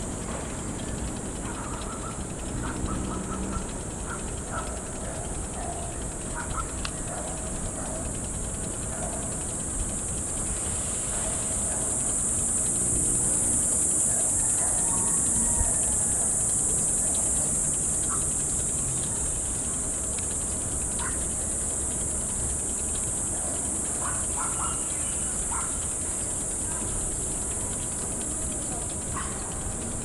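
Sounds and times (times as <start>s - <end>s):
high-pitched hiss: 8.6s - 30.0s.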